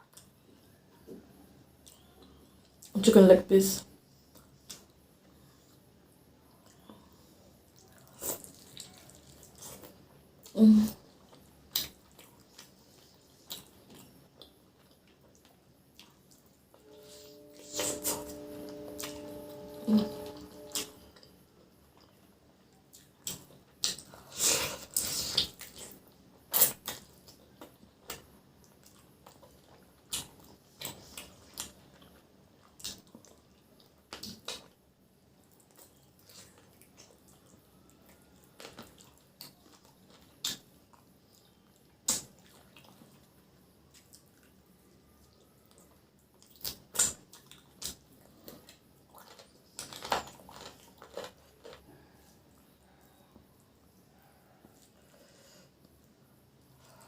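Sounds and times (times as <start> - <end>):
person chewing food: 6.5 - 21.3, 21.9 - 34.8, 35.4 - 44.6, 45.2 - 53.6.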